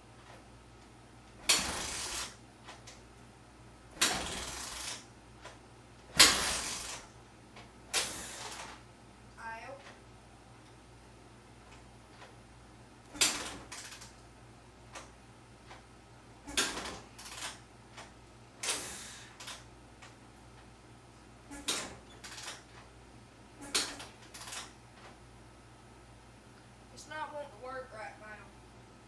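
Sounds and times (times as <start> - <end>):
engine cranking without starting: 4.0 - 5.0, 6.2 - 7.1.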